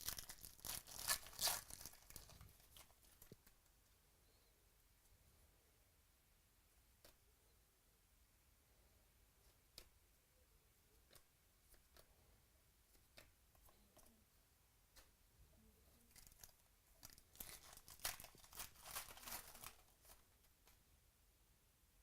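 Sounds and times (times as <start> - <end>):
cards and packaging crinkling: 0.0 - 3.5, 16.1 - 20.2.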